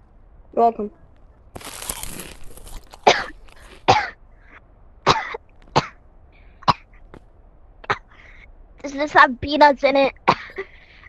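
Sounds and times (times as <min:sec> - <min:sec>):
person coughing: 0:03.0 - 0:04.1, 0:10.3 - 0:10.8.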